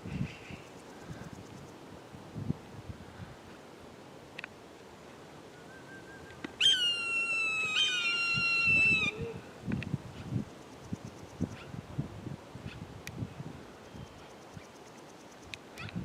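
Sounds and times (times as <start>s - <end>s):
large bird calling harshly: 6.6s - 9.4s.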